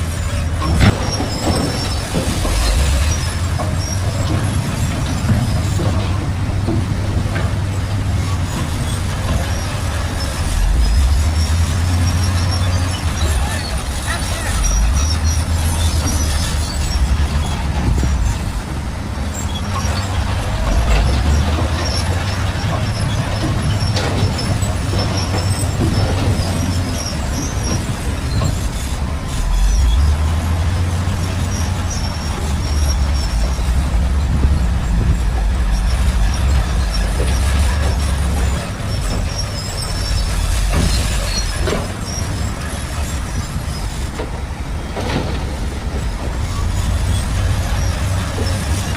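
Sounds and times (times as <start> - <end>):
bulldozer diesel engine rumbling: 0.0 - 48.9
short high squeaks: 8.4 - 18.6, 19.3 - 44.2.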